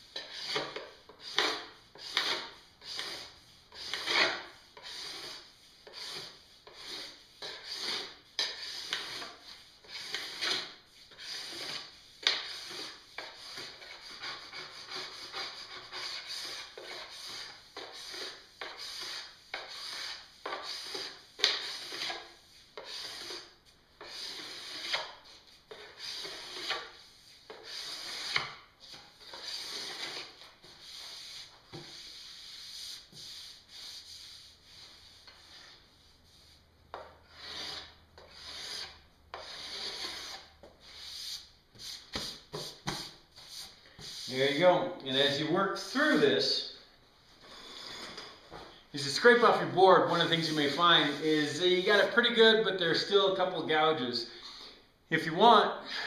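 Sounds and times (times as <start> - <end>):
metal scraper scraping snowboard: 0.2 - 31.2, 37.2 - 40.5.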